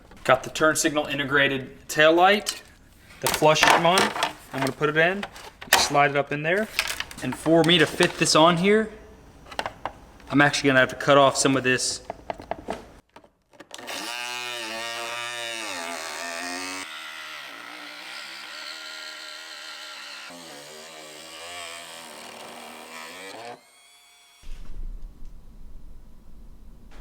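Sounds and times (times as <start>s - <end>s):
power tool motor whine: 13.8s - 24.5s.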